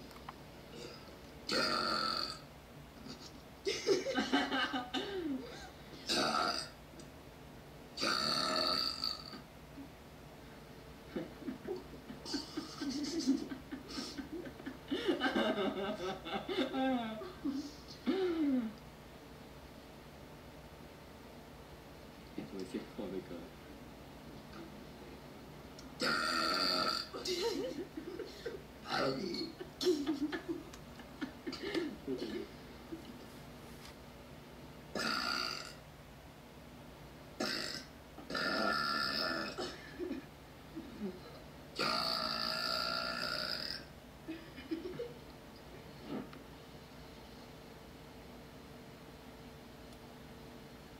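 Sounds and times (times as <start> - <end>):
woman belching: 0.8 - 2.4, 6.1 - 6.8, 8.0 - 9.4, 26.0 - 27.4, 34.9 - 35.8, 37.4 - 40.0, 41.8 - 43.9
person chuckling: 3.0 - 5.8, 11.1 - 18.8, 27.2 - 33.2, 39.5 - 41.4, 44.3 - 45.2.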